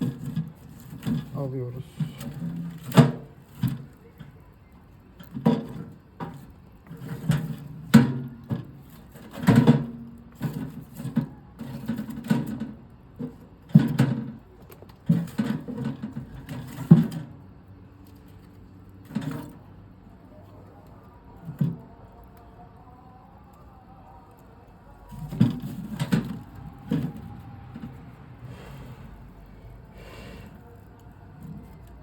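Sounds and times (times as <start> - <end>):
knocks and clatter of objects: 0.0 - 4.4, 5.2 - 19.7, 25.1 - 28.6.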